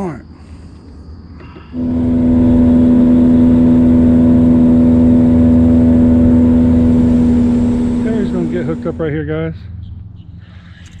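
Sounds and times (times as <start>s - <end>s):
boat motor running: 1.8s - 9.3s.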